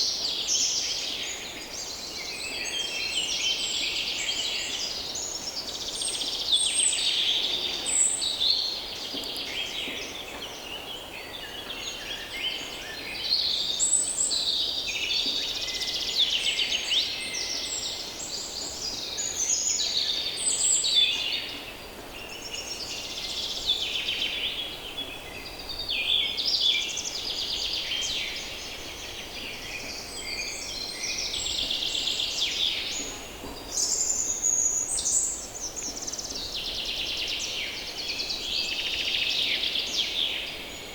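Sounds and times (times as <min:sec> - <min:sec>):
songbirds singing and calling: 0:00.0 - 0:40.9.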